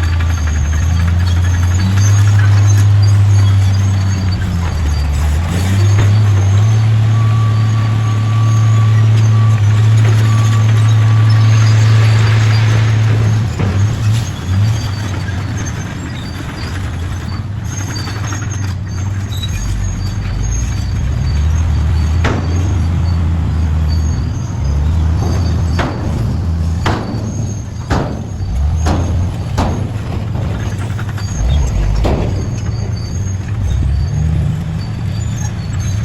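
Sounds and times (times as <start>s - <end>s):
heavy diesel engine running: 0.0s - 36.0s
sharp metallic knocks: 9.0s - 15.4s, 19.6s - 34.7s.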